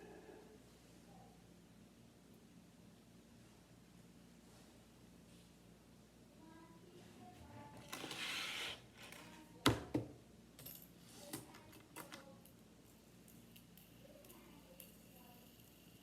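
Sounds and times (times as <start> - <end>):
rustling scrape: 7.8 - 9.4.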